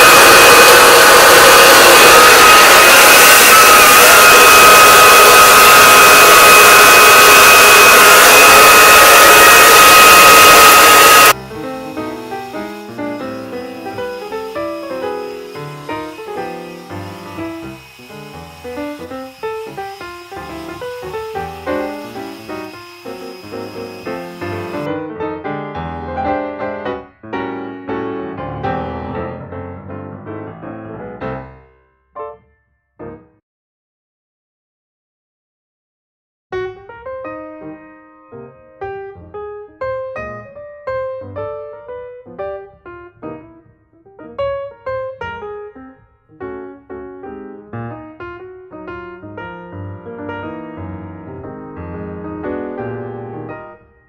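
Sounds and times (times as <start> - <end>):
blow dryer running: 0.0 - 24.9
piano music: 11.3 - 31.6.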